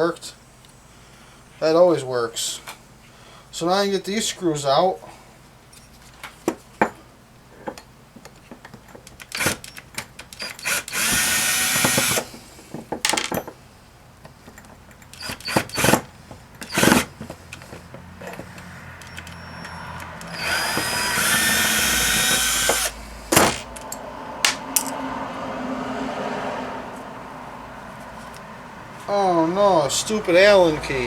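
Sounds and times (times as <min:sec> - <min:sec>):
power drill running: 0:09.3 - 0:12.4, 0:15.1 - 0:17.2, 0:19.0 - 0:23.0
clicks and knocks of metal parts: 0:12.7 - 0:13.6, 0:23.3 - 0:25.0.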